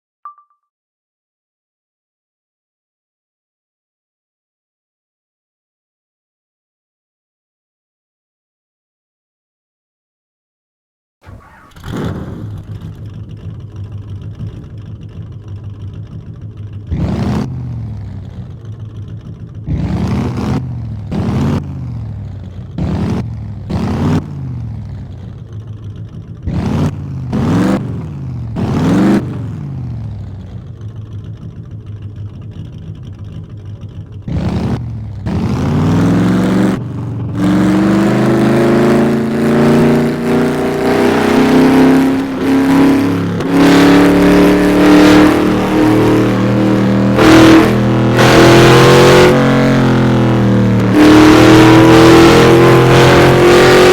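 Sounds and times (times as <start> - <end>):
car engine revving: 11.2 - 53.9.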